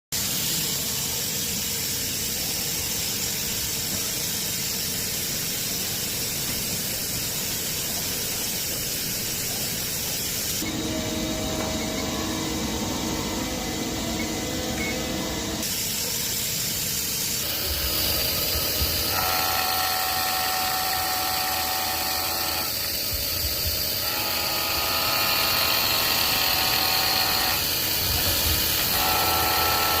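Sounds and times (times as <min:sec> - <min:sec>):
milling machine hissing: 0:00.2 - 0:30.0
whining motor tones: 0:10.6 - 0:15.6, 0:17.5 - 0:30.0.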